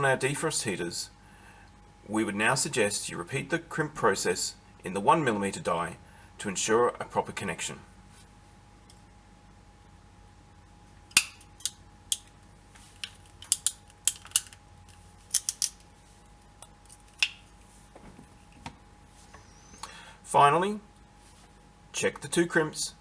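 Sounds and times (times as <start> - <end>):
ratchet crimp tool clicking: 13.4 - 14.6, 15.3 - 15.8.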